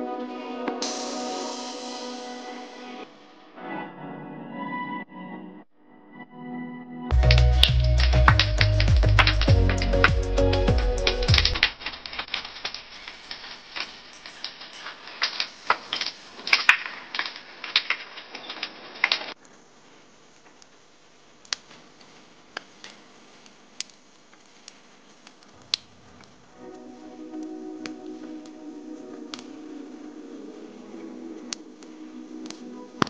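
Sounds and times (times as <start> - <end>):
campfire crackling and popping: 7.1 - 19.4.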